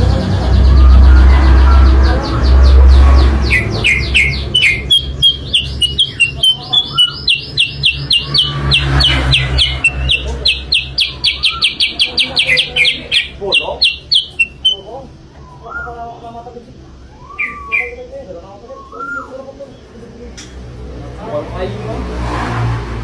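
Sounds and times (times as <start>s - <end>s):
loud low rumble: 0.0s - 15.3s
bird chirping: 0.0s - 20.6s.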